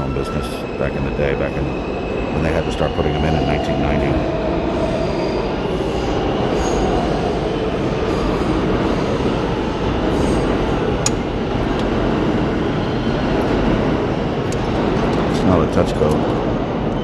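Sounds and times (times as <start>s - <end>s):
subway train rumbling on track: 0.0s - 17.0s.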